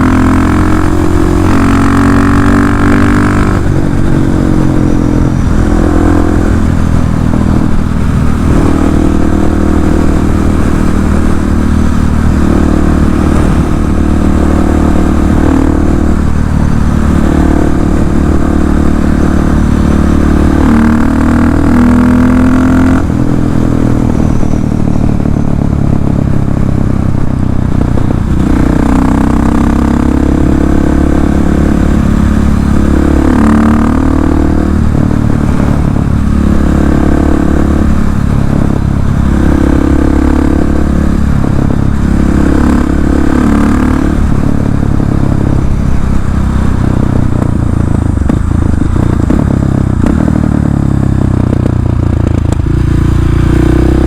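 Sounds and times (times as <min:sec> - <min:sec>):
loud motorcycle engine revving: 0:00.0 - 0:54.0.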